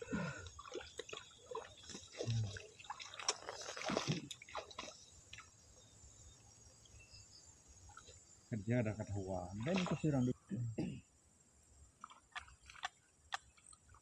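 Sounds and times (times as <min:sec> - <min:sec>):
water splashing and dripping: 0:00.0 - 0:05.6, 0:09.6 - 0:10.3, 0:12.0 - 0:14.0.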